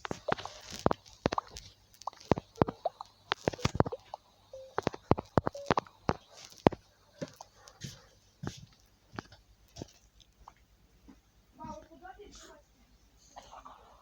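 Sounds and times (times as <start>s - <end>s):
small objects clattering: 0.0s - 4.1s.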